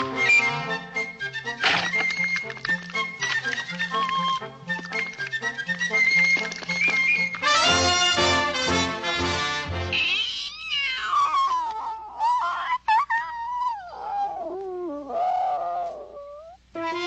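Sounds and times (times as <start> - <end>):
cat-like cartoon wail: 9.9 - 16.6.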